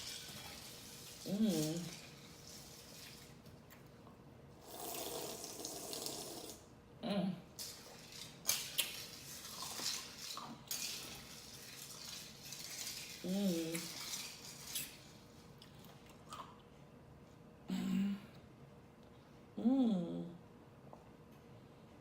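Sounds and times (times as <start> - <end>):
spoon scraping ice in a bowl: 7.6 - 15.0
person humming: 19.6 - 20.4.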